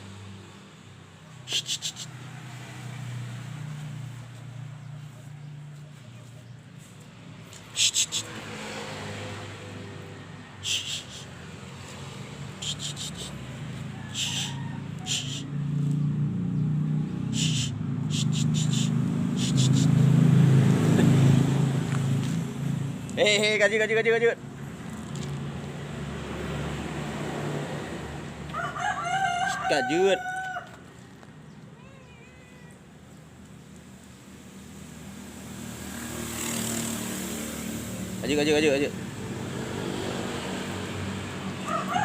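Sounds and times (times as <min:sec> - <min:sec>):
engine running: 0:01.4 - 0:28.5.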